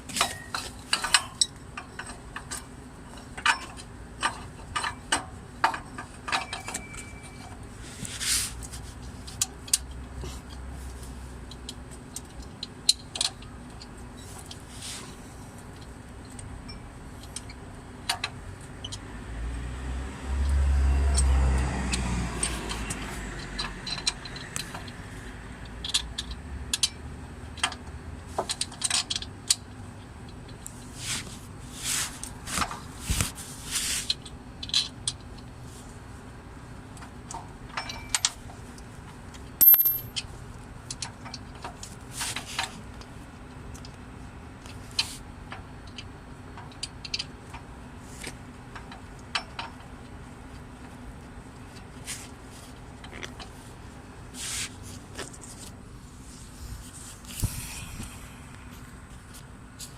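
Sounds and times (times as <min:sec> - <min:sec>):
wrenches and metal parts clinking: 0:00.1 - 0:05.1, 0:37.8 - 0:38.4, 0:39.6 - 0:40.3.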